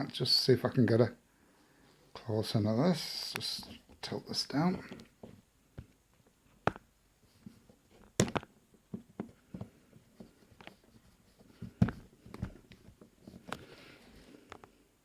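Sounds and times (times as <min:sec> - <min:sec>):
handling clicks and knocks: 0:04.8 - 0:13.7.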